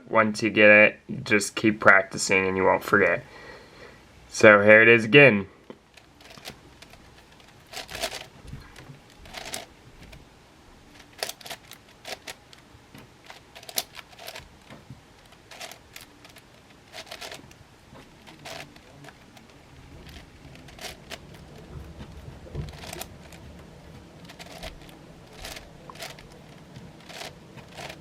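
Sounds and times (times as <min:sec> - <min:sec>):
puzzle cube clicking: 0:05.9 - 0:10.2, 0:10.9 - 0:28.0.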